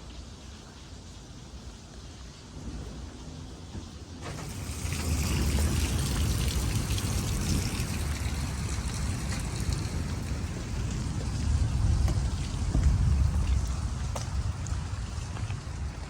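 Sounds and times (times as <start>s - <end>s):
heavy rain: 0.0s - 16.0s
gusting wind: 2.5s - 16.0s
wind buffeting microphone: 4.2s - 16.0s.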